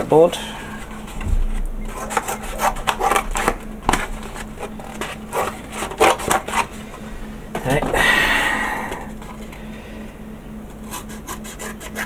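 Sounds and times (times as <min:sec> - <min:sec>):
cardboard being cut: 0:01.9 - 0:06.7.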